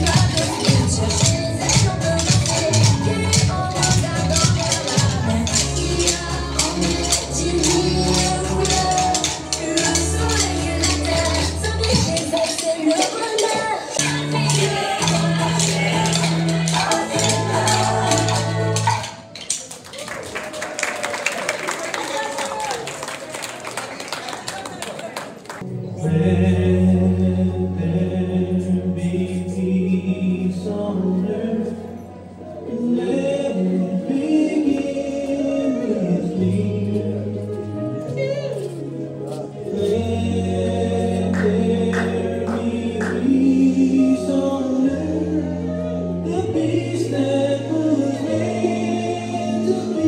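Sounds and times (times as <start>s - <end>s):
group singing chant unaccompanied: 0.0s - 19.1s, 39.5s - 50.0s.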